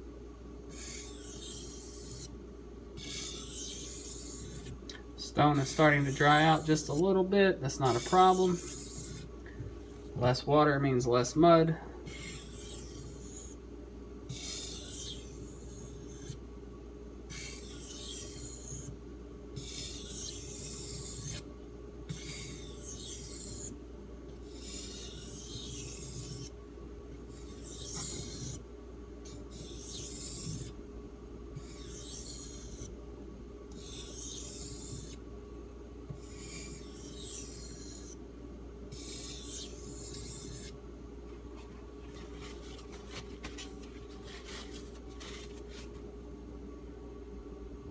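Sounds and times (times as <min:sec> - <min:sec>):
knife scraping on whetstone: 0:00.7 - 0:02.3, 0:03.0 - 0:04.8, 0:05.5 - 0:07.0, 0:07.8 - 0:09.3, 0:12.1 - 0:13.6, 0:14.3 - 0:16.4, 0:17.3 - 0:18.9, 0:19.6 - 0:21.4, 0:22.1 - 0:23.8, 0:24.4 - 0:26.5, 0:27.3 - 0:28.6, 0:29.3 - 0:30.8, 0:31.6 - 0:32.9, 0:33.8 - 0:35.2, 0:36.1 - 0:38.2, 0:38.9 - 0:40.8, 0:41.6 - 0:46.0.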